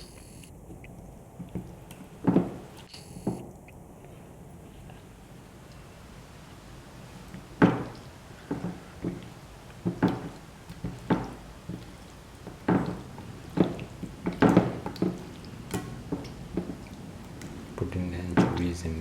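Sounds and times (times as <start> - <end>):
knocks and thuds of plate handling: 7.6 - 9.2, 12.5 - 16.8, 18.3 - 18.7.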